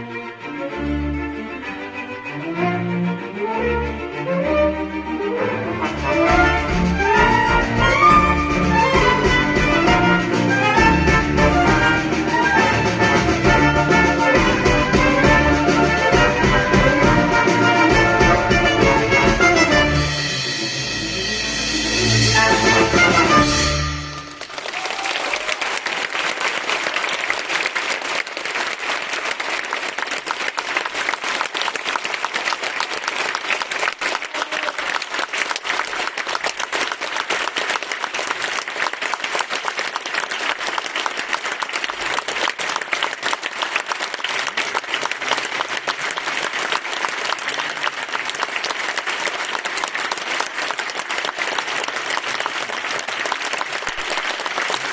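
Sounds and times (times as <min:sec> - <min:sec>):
large audience applauding: 0:22.4 - 0:54.9.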